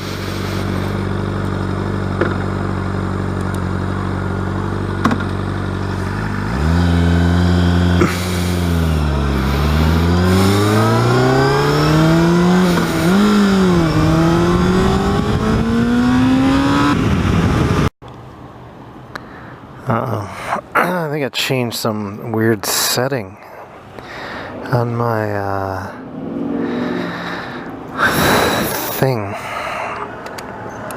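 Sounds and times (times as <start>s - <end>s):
motorcycle engine accelerating: 0.0s - 17.9s.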